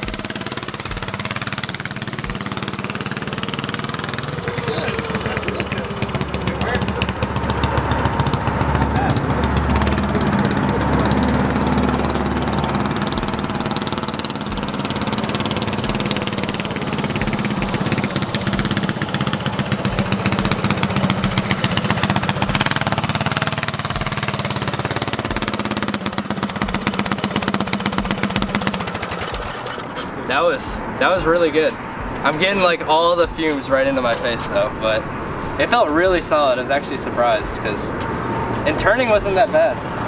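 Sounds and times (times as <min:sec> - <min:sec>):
small engine running under load: 0:00.0 - 0:30.8.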